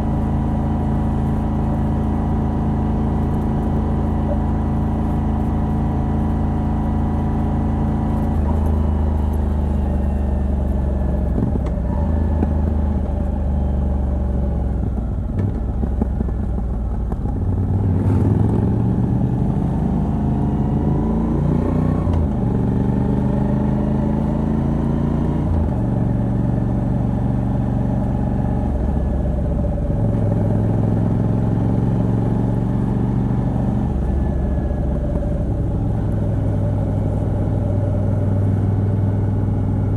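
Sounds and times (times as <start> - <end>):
motorcycle engine revving: 15.3 - 39.9.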